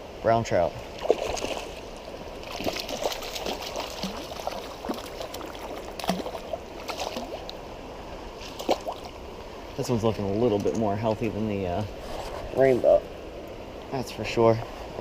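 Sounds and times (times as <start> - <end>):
creek water gurgling: 0.4 - 14.1
fish splashing at surface: 2.4 - 7.5.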